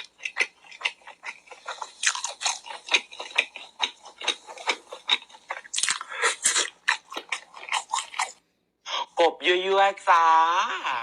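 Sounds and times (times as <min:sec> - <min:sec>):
crunchy chewing and biting: 0:00.0 - 0:08.4.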